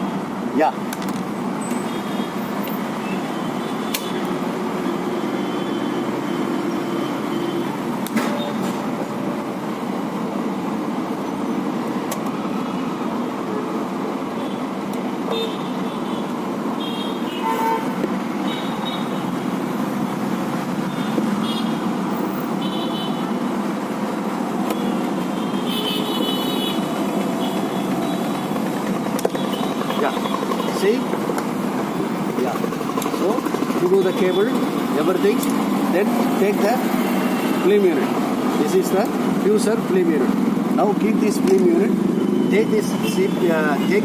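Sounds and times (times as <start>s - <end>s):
road traffic noise: 0.0s - 44.0s
high horn toots: 15.3s - 19.2s.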